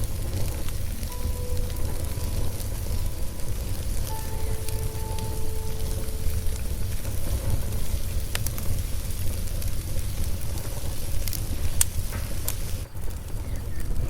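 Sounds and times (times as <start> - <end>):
fire popping: 0.0 - 14.0
fire rumbling: 0.0 - 14.0.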